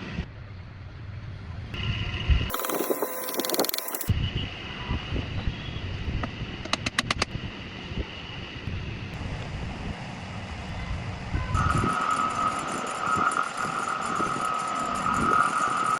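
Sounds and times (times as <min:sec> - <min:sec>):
steady high whine: 0:02.5 - 0:04.1.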